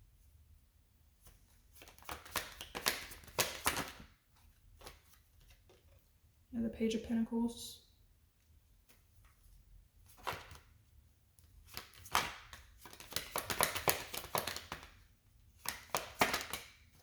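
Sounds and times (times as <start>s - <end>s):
cards flicking and slapping: 1.2s - 5.8s, 10.0s - 10.8s, 11.4s - 17.0s.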